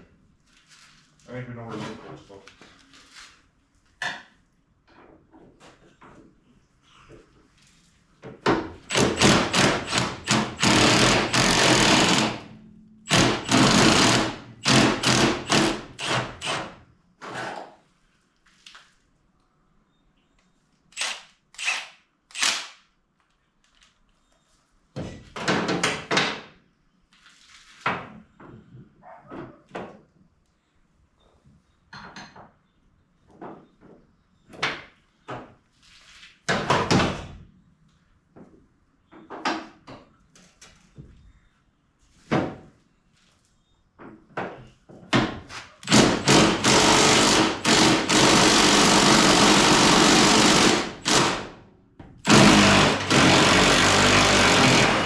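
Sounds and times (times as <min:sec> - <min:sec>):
power tool running: 0:08.9 - 0:12.4, 0:13.1 - 0:16.7, 0:45.9 - 0:51.5, 0:52.3 - 0:55.0.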